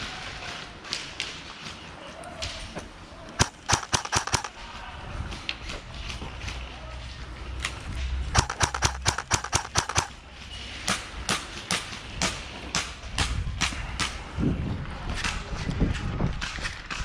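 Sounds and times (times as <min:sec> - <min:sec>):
airsoft guns firing: 0:03.4 - 0:04.6, 0:08.3 - 0:10.2.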